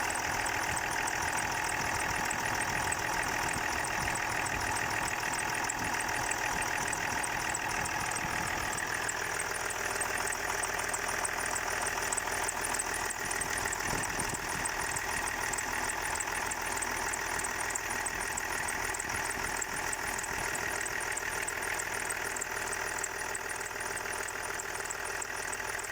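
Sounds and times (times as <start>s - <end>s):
car engine idling: 0.0s - 25.9s.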